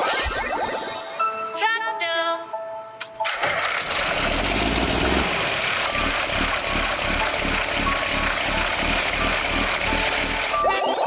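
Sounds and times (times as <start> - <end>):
tractor engine running: 3.2 - 10.8.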